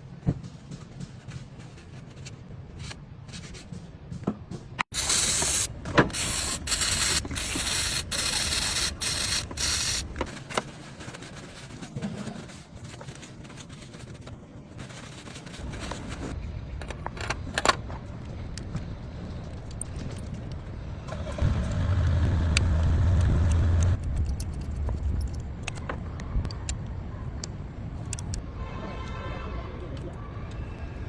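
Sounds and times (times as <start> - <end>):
hissing spray bursts: 4.9 - 10.1.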